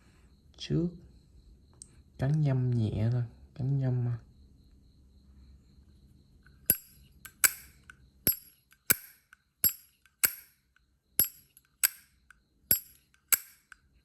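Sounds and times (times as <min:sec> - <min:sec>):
lighter lid clinking open and shut: 0:06.7 - 0:10.5, 0:11.2 - 0:12.1, 0:12.7 - 0:13.8.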